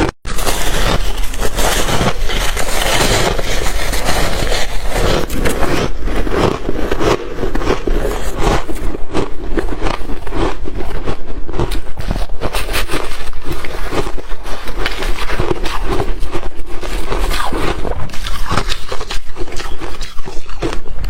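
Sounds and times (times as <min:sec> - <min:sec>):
chewing shaved ice: 0:00.3 - 0:21.0.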